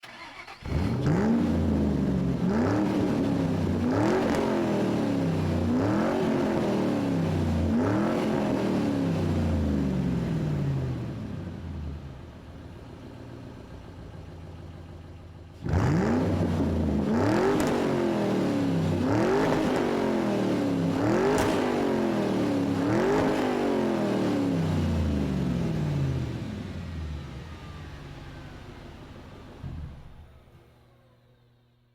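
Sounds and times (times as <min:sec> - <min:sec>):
engine revving: 0:00.0 - 0:12.1, 0:15.6 - 0:27.8
engine idling: 0:09.6 - 0:15.7.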